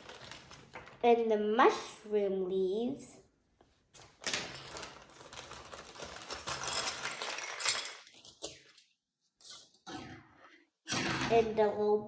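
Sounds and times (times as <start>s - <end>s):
plastic parts rustling and clicking: 4.0s - 8.8s.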